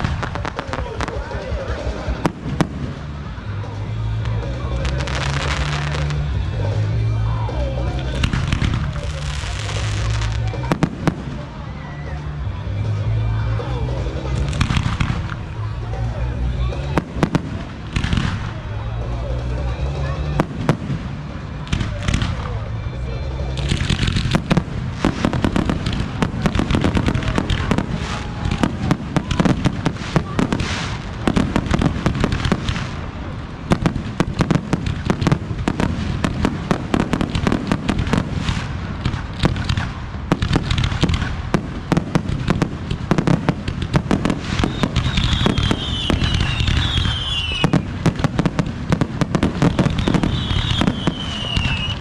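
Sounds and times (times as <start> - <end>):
fireworks bursts and crackling: 0.0 - 52.0
falling firework whistles: 44.2 - 48.0, 49.3 - 52.0.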